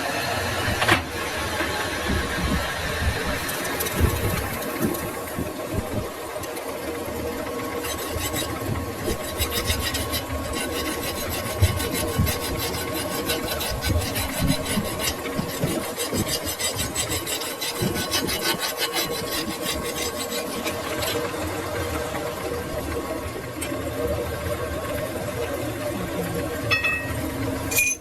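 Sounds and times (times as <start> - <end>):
metal lathe humming: 6.2 - 22.5
steel rasping scrape: 7.7 - 21.3.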